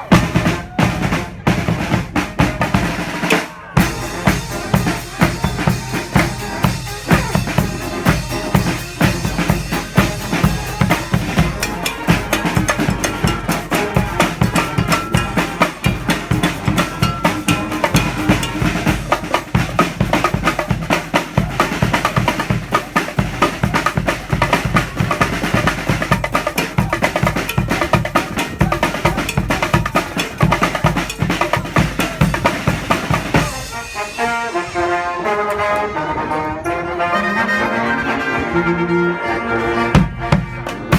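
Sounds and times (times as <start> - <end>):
snare drums: 0.0 - 35.8, 40.0 - 40.9
bass drum beat: 3.8 - 33.8.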